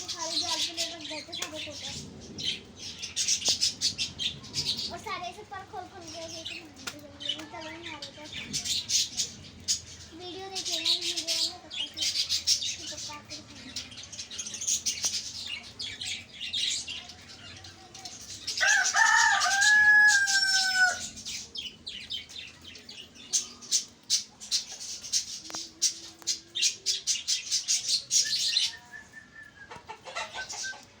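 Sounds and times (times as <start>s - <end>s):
rooster crowing: 18.6s - 21.1s.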